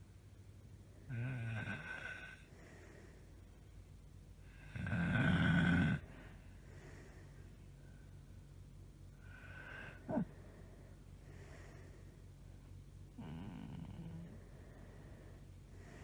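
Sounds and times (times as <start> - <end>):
woman snoring: 1.1 - 2.5, 4.5 - 6.2, 9.2 - 10.3, 13.2 - 14.4.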